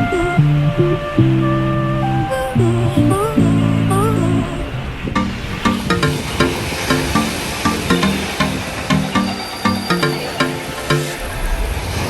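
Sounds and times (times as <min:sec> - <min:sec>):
background music: 0:00.0 - 0:11.4.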